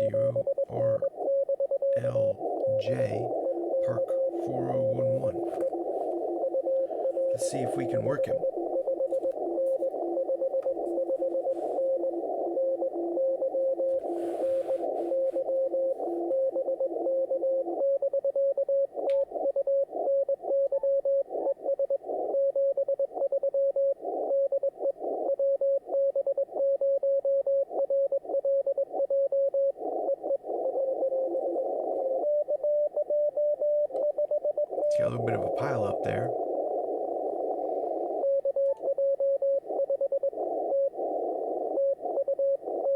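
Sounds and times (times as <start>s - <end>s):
radio static: 0.0s - 1.2s, 2.0s - 13.1s, 13.7s - 16.3s, 34.8s - 38.2s
morse code beeps: 0.0s - 18.1s, 30.7s - 36.4s.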